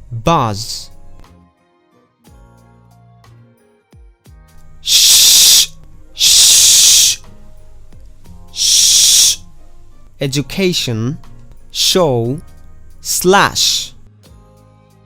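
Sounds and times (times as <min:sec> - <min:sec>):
soft background music: 0:00.0 - 0:04.9, 0:05.7 - 0:06.2, 0:07.2 - 0:15.0
woman making sh sound: 0:04.8 - 0:07.3, 0:08.6 - 0:09.4.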